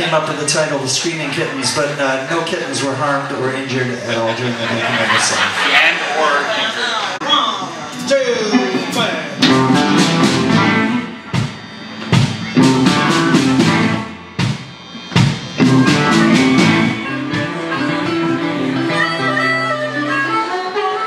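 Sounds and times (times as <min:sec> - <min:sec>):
electric blues band playing: 0:07.5 - 0:21.0.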